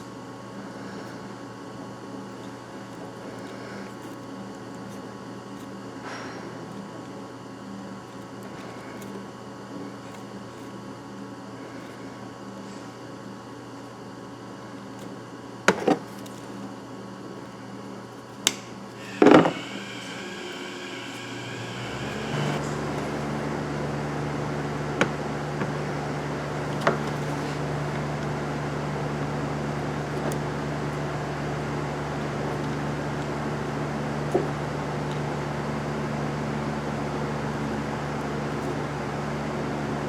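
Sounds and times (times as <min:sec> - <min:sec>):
heat gun blowing hot air: 0:19.0 - 0:25.9.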